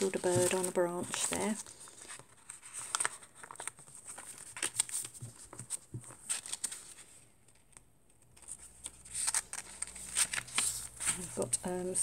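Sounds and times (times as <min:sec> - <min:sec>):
paper pages rustling: 0:00.0 - 0:12.0.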